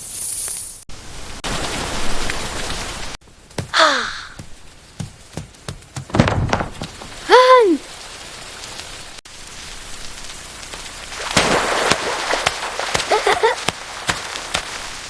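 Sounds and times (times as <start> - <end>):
steady rain: 0.9 - 15.0
sharp crackles: 5.9 - 15.0.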